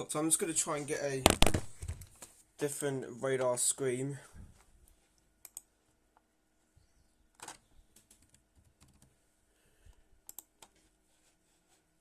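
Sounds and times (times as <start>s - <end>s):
faint computer keyboard keystrokes: 7.4s - 9.1s, 10.3s - 10.8s.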